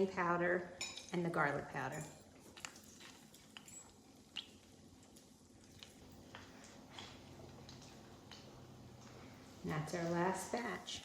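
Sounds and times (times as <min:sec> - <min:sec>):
small pops and clicks of frying: 0:02.3 - 0:11.0.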